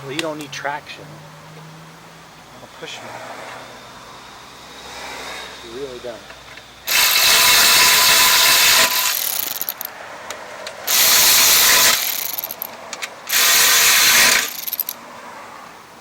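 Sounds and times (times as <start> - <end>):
shop tool running: 6.9 - 9.9, 10.9 - 15.0.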